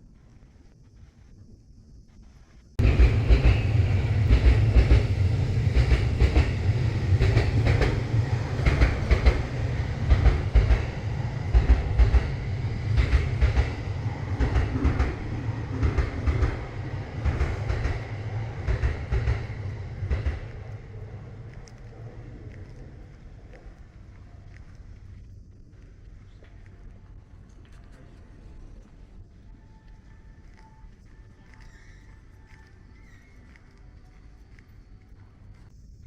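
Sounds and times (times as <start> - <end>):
train rumbling past: 2.8 - 24.5.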